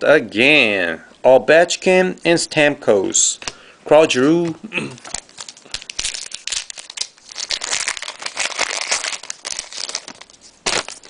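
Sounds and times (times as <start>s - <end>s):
card pack wrapper crinkling: 4.2s - 11.0s.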